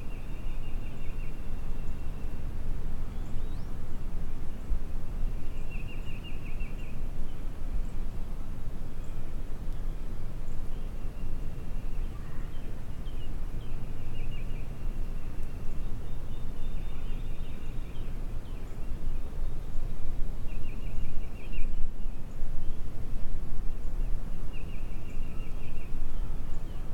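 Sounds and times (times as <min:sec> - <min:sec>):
wind rumbling on microphone: 0:00.0 - 0:26.9.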